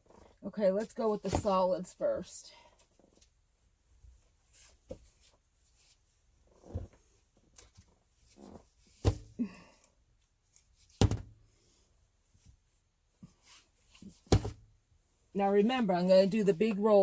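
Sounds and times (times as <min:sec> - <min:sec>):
objects knocking and thunking: 0:10.9 - 0:11.4, 0:14.0 - 0:14.6.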